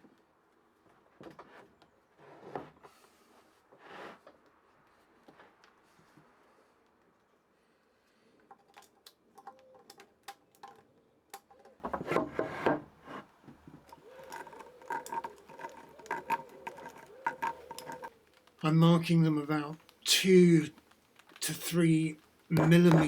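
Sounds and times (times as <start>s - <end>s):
handling noise: 11.4s - 18.6s
hand tool tapping on wood: 22.5s - 23.0s.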